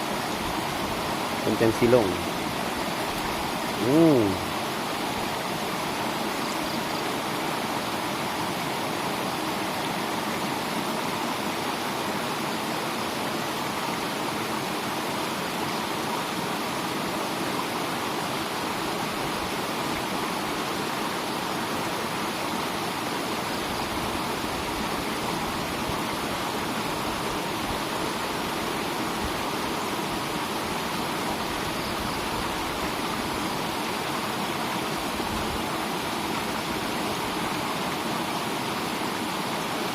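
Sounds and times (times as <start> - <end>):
running water splashing: 0.0 - 6.4.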